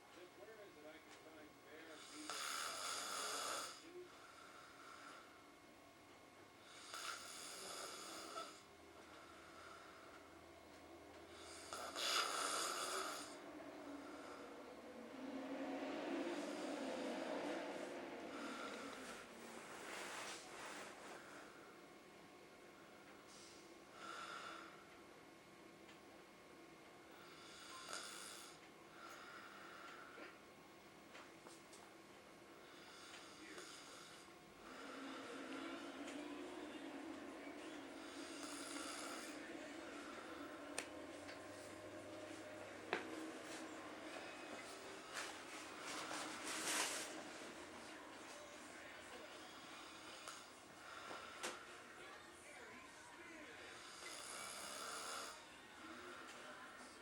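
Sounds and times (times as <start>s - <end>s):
quiet breathing: 0.0s - 5.8s, 6.5s - 25.1s, 27.0s - 30.6s, 32.4s - 57.0s
person snoring: 2.0s - 5.3s, 6.6s - 10.1s, 11.3s - 21.6s, 32.6s - 51.7s, 53.7s - 56.9s.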